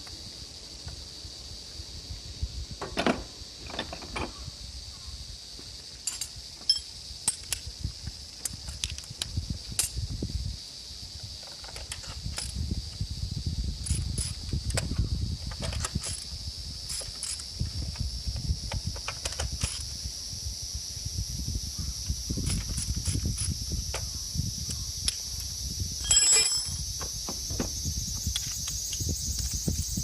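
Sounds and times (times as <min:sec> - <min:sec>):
insects droning: 0:00.0 - 0:30.0
metallic clicks of hand tools: 0:06.0 - 0:07.7, 0:08.4 - 0:10.0, 0:18.7 - 0:19.9.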